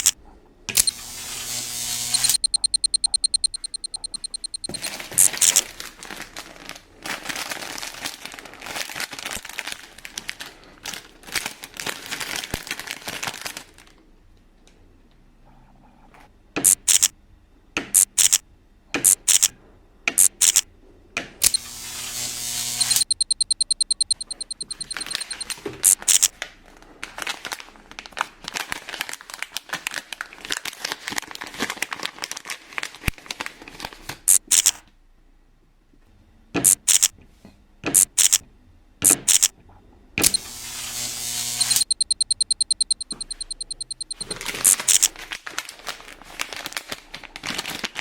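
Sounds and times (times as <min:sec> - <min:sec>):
plastic and cardboard crinkling: 0:04.7 - 0:13.9, 0:26.3 - 0:34.3, 0:44.2 - 0:48.0.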